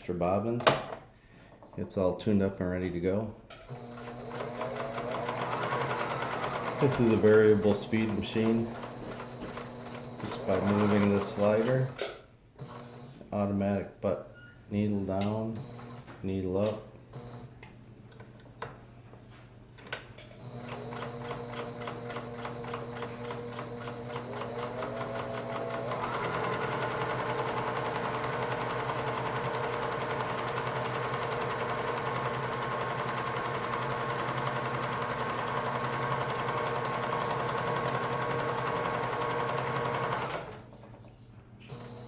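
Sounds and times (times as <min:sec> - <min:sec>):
sewing machine clicks: 0:03.5 - 0:13.1, 0:19.8 - 0:41.0
sewing machine running: 0:03.7 - 0:12.0, 0:12.6 - 0:13.1, 0:15.6 - 0:16.0, 0:17.1 - 0:17.5, 0:20.4 - 0:40.8, 0:41.7 - 0:42.0.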